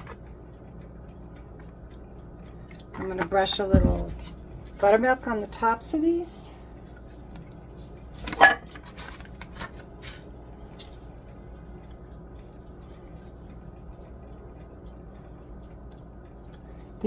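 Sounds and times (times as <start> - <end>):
steady low hum: 0.0 - 17.0
utensils clinking on metal pan: 8.3 - 8.8.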